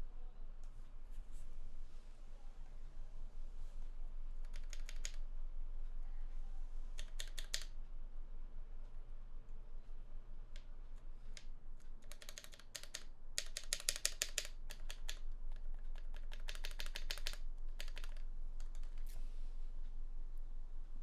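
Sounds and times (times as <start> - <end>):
plastic keyboard stem clicking: 4.4 - 5.2, 7.0 - 7.7, 11.4 - 19.1.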